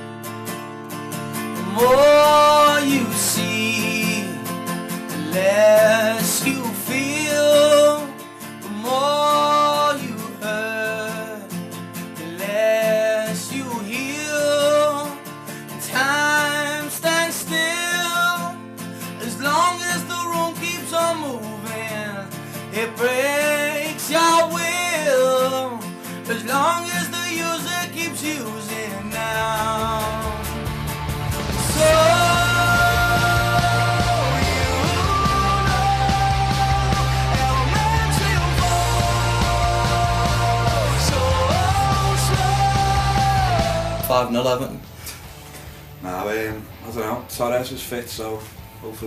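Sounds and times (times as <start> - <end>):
strummed acoustic guitar: 0.0 - 49.0
person singing: 1.6 - 4.6, 5.2 - 11.5, 19.2 - 30.7, 31.5 - 44.4.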